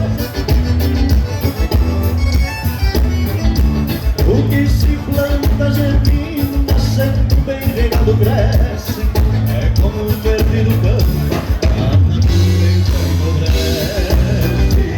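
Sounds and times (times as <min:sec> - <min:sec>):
live band playing: 0:00.0 - 0:14.9.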